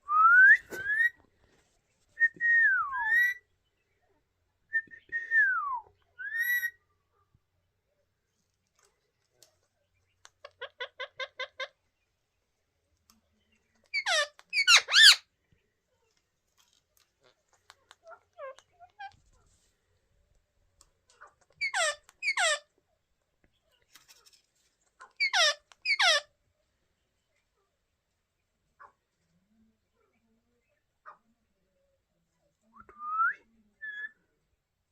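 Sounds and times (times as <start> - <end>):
parrots chattering and screeching: 10.4 - 11.8, 13.8 - 15.3, 17.6 - 19.2, 21.1 - 22.6, 25.0 - 26.3.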